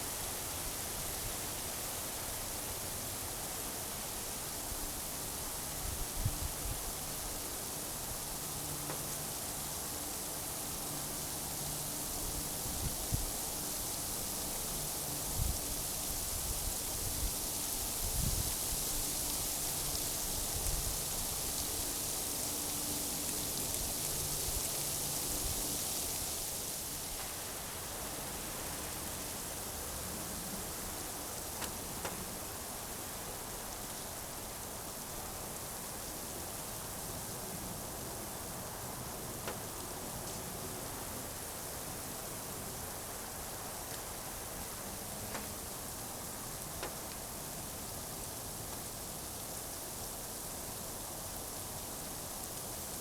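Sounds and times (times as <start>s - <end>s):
rain falling: 6.5s - 53.0s.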